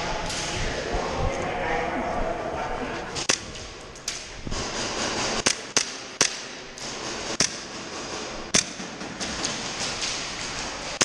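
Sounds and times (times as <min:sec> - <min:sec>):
airsoft gunshots: 0:04.6 - 0:10.0.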